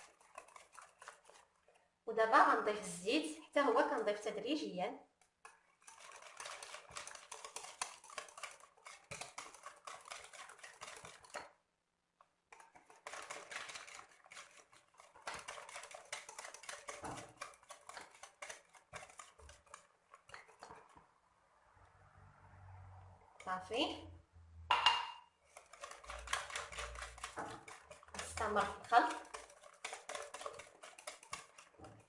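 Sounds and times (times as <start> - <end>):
utensil beating against mixing bowl: 0.0 - 1.8, 5.4 - 11.6, 12.5 - 21.1, 24.7 - 32.0.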